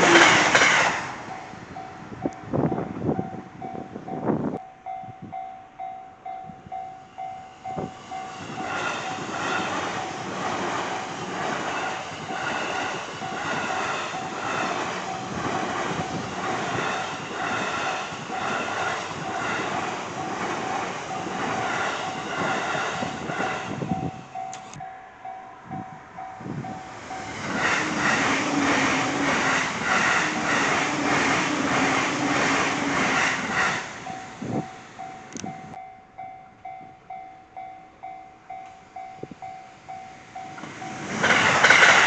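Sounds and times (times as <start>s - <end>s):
train wheels clattering: 0.0s - 1.2s, 7.8s - 24.8s, 26.7s - 35.5s, 40.4s - 42.0s.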